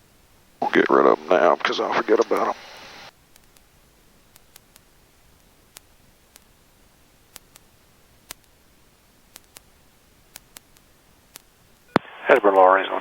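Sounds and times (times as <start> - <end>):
faint hiss: 0.0 - 13.0
sharp small clicks: 2.3 - 12.6.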